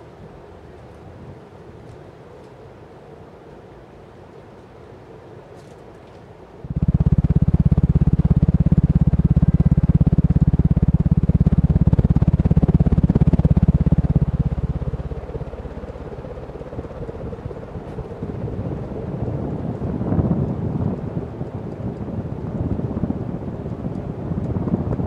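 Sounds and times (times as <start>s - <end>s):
fan draft buffeting microphone: 5.5s - 25.0s.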